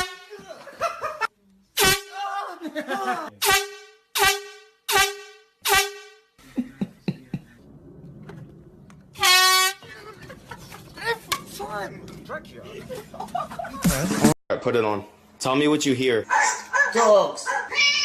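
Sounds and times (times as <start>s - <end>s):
air horn blasts: 0.0s - 0.4s, 1.8s - 2.2s, 3.4s - 6.3s, 9.2s - 9.8s.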